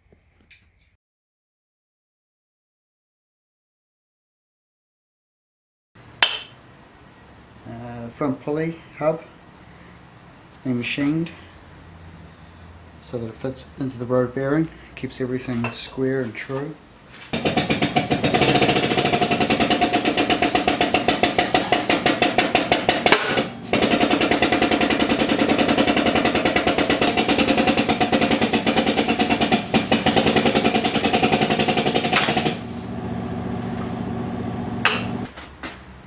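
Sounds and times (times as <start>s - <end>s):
power tool hammering: 17.4s - 35.3s.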